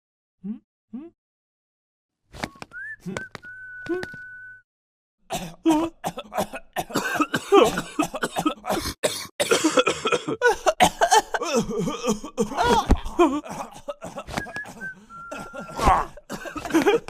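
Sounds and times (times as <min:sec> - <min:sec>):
cartoon character coughing: 0:05.3 - 0:14.4.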